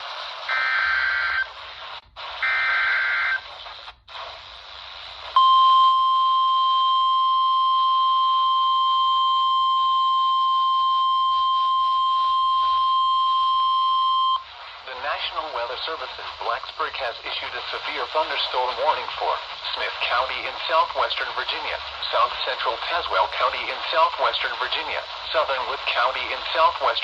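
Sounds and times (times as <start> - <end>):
radio static hiss: 0.0 - 5.5, 14.2 - 27.0.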